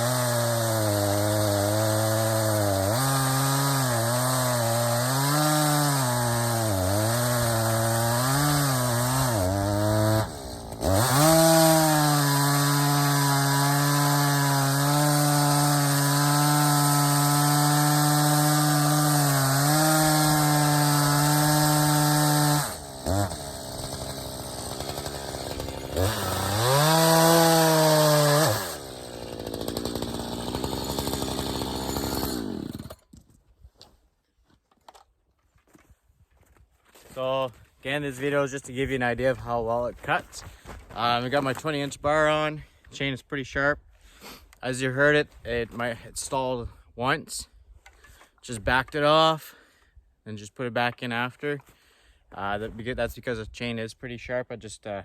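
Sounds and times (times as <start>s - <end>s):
chainsaw cutting wood: 0.0s - 33.2s.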